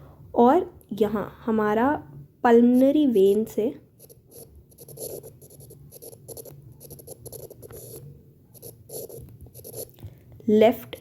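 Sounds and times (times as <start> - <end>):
pen scratching while writing: 4.0 - 8.0, 8.6 - 9.9.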